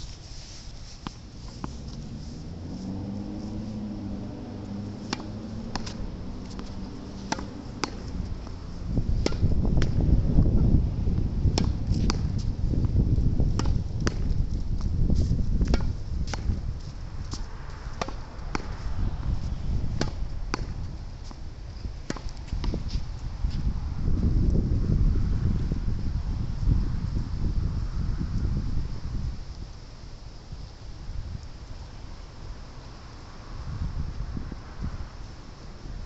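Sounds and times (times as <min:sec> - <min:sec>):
wind buffeting microphone: 0:00.0 - 0:36.0
tennis ball pops: 0:05.1 - 0:08.2.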